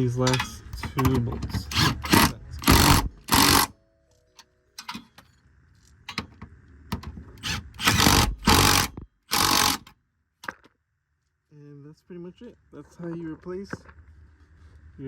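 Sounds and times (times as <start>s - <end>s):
impact wrench bursts: 0.3s - 3.7s, 7.4s - 9.9s.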